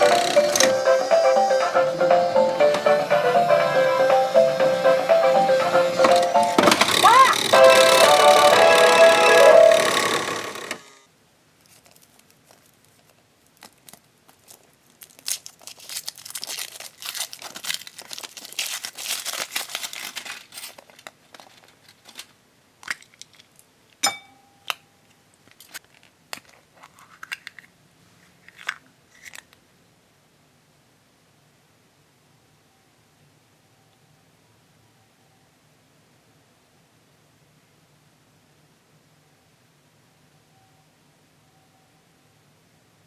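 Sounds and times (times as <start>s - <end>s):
background music: 0.0s - 10.8s
foil wrapper crinkling and tearing: 11.6s - 23.5s, 25.5s - 27.4s.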